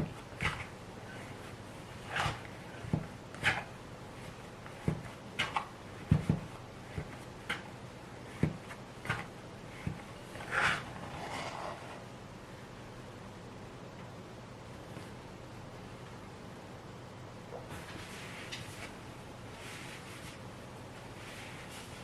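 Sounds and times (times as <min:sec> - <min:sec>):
hands rubbing dough: 0:00.0 - 0:12.0, 0:17.7 - 0:22.0
dough thumping on a board: 0:04.7 - 0:07.7, 0:08.3 - 0:10.1.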